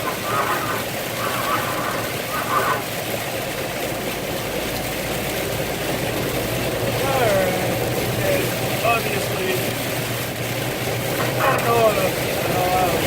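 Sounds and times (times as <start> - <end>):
rain hissing: 0.0 - 13.0.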